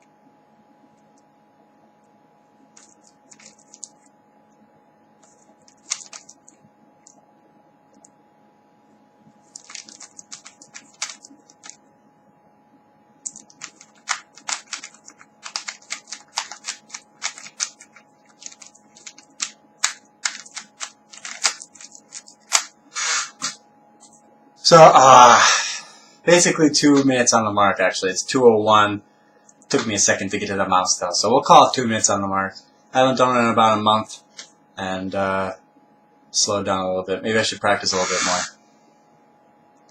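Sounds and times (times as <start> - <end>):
puzzle cube plastic clicking: 9.5 - 11.8, 13.2 - 22.7.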